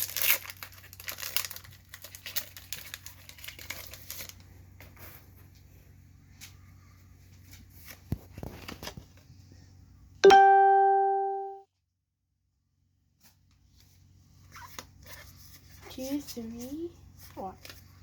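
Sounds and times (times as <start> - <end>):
foil pack crinkling: 0.0 - 4.4
bright ding: 10.2 - 11.6.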